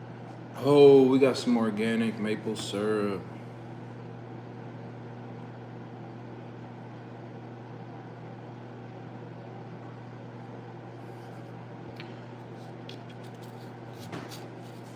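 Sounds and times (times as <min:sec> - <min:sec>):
low electrical hum: 0:00.0 - 0:14.9.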